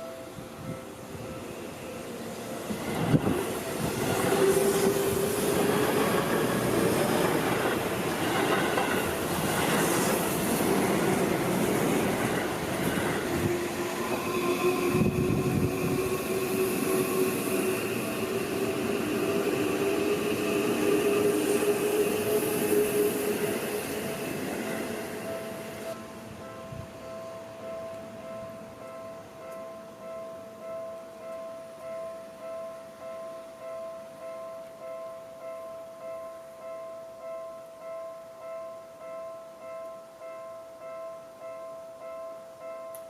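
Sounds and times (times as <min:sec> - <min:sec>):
wheel and rail noise: 0:00.0 - 0:26.6
electric train passing: 0:00.0 - 0:36.8.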